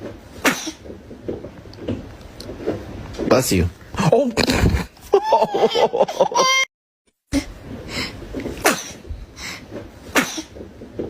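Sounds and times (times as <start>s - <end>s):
person sneezing: 8.6s - 9.0s, 10.1s - 10.5s.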